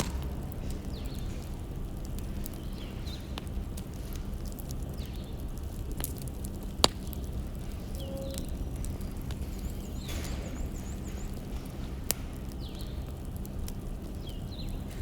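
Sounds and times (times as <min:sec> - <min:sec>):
sharp pops: 0:00.0 - 0:03.5
steady low rumble: 0:00.0 - 0:15.0
wood fire crackling: 0:00.0 - 0:15.0.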